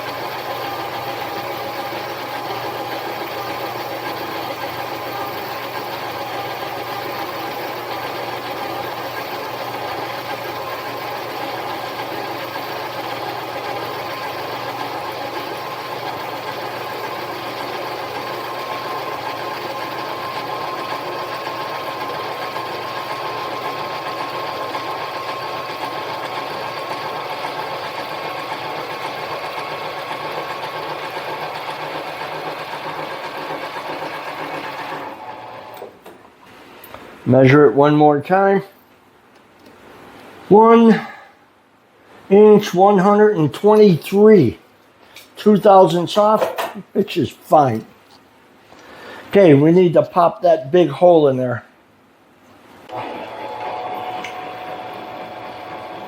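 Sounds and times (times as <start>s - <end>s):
lathe motor and gear whine: 0.0s - 35.9s, 52.9s - 56.0s.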